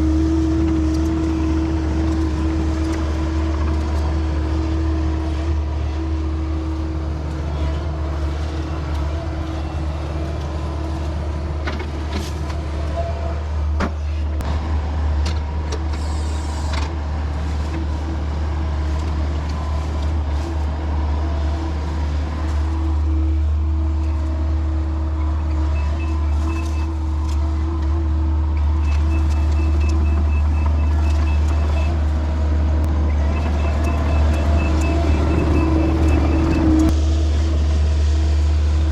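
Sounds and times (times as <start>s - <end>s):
excavator diesel engine running: 0.0s - 38.9s
rapid high beeping: 33.3s - 36.8s.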